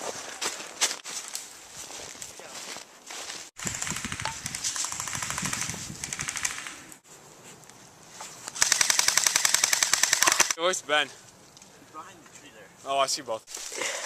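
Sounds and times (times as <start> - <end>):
airsoft guns firing: 3.6 - 6.9, 8.6 - 10.6.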